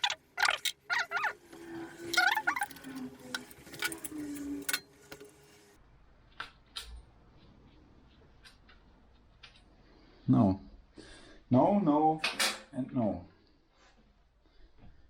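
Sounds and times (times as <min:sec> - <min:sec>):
seized bolt squeaking: 0:02.1 - 0:04.8.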